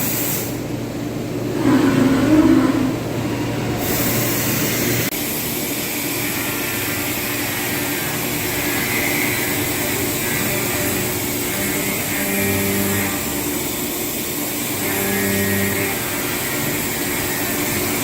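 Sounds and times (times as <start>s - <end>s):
cnc machine cutting: 5.8s - 18.0s.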